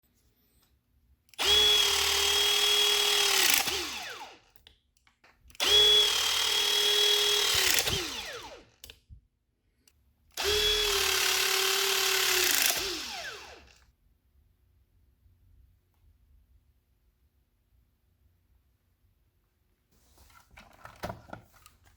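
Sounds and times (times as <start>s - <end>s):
hydraulic crimper motor whirring: 1.3s - 4.4s, 5.5s - 9.0s, 10.4s - 13.8s.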